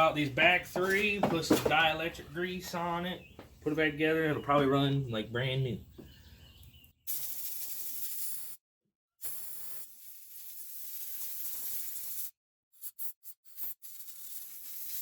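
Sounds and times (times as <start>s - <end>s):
compressed air hissing blasts: 7.1s - 8.6s, 9.2s - 12.3s, 13.5s - 15.0s.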